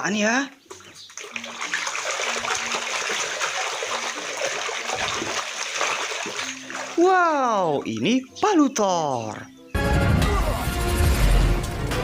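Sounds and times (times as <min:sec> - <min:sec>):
water splashing and sloshing: 0:00.0 - 0:08.4.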